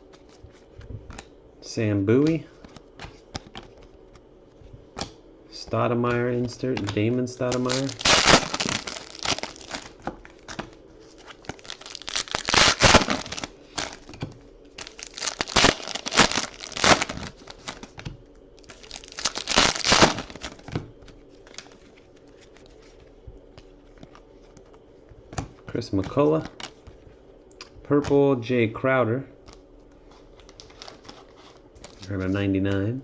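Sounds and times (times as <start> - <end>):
card pack wrappers tearing and crinkling: 6.8 - 14.2, 14.8 - 20.7, 30.4 - 32.0.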